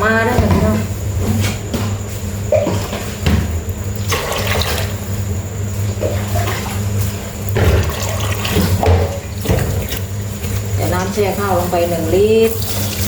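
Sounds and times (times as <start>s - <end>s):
water pouring into a bowl: 3.9s - 5.2s, 7.8s - 8.8s.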